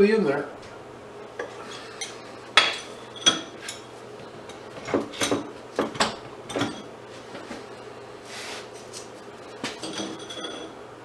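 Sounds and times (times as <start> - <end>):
metal tools clinking: 1.4 - 6.9, 9.6 - 10.8.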